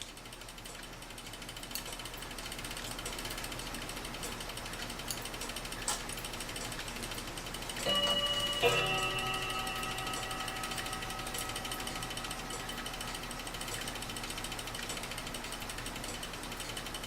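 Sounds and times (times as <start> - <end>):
clock movement clicking: 0.6 - 17.0
clock strike ringing: 7.8 - 15.1.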